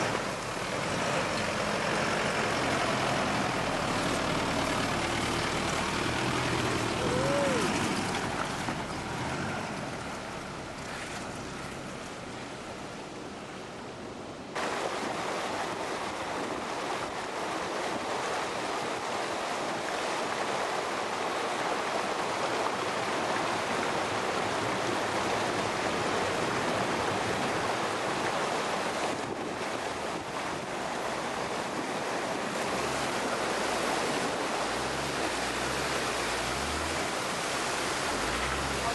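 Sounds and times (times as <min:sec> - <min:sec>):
creek water rushing: 0:00.0 - 0:38.9.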